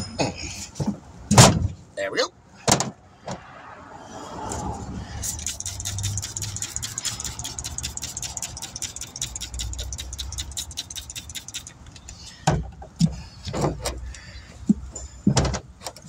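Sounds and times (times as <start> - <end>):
motor running with rapid ticking: 5.3 - 11.8
knocks and clanks: 14.7 - 16.0.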